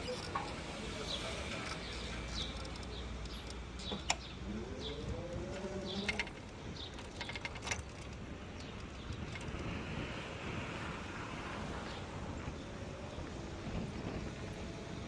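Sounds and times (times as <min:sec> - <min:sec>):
small birds chirping: 0:00.0 - 0:10.1
low traffic rumble: 0:00.0 - 0:15.0
sharp clicks: 0:01.5 - 0:09.7.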